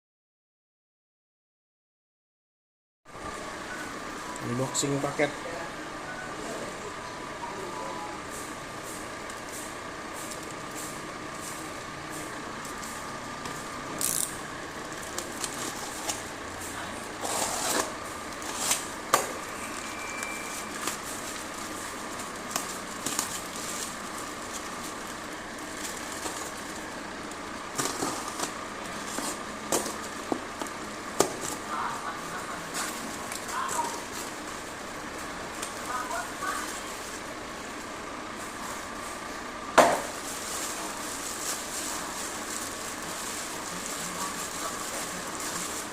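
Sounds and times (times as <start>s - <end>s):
steady background hum: 3.1s - 45.9s
packaging crinkling and ripping: 17.2s - 32.0s, 40.1s - 45.9s.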